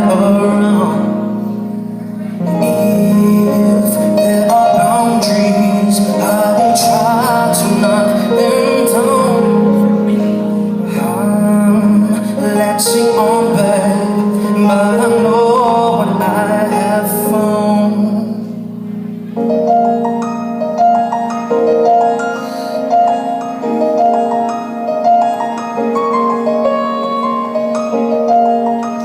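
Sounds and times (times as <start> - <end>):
person singing: 0.0 - 1.5, 2.1 - 19.4, 25.3 - 28.2
keyboard chords: 0.0 - 29.0.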